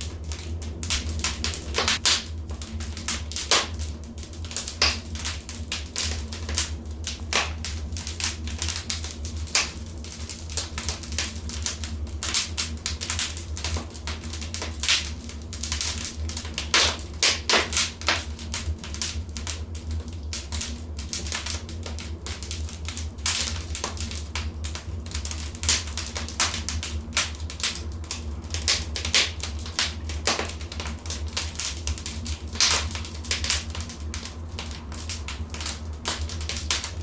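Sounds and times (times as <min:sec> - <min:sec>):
fire popping: 0:00.0 - 0:37.0
wood fire crackling: 0:00.0 - 0:37.0
low rumble: 0:36.5 - 0:37.0.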